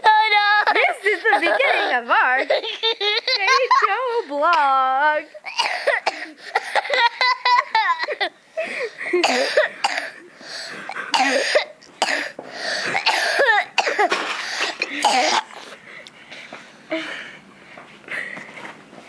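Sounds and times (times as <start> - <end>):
boy coughing: 5.4 - 8.3, 9.1 - 10.2, 10.8 - 15.6.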